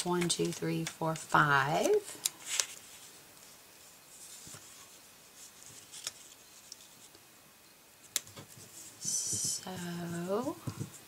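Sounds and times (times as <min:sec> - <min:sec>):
paper ticks: 0:00.0 - 0:02.8
paper rustling: 0:00.0 - 0:07.2.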